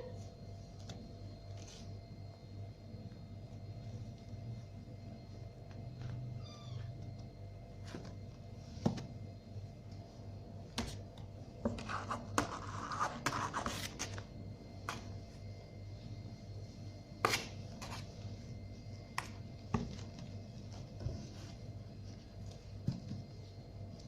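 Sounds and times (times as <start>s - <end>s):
kittens scuffling and scratching: 19.6s - 24.0s.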